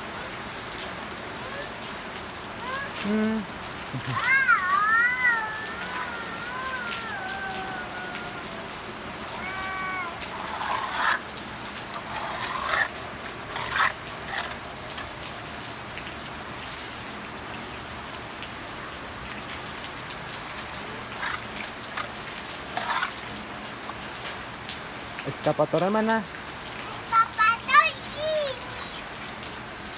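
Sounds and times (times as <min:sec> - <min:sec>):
steady rain falling: 0:00.0 - 0:29.9
splashing bursts: 0:00.9 - 0:16.0, 0:19.5 - 0:24.6, 0:26.0 - 0:29.4.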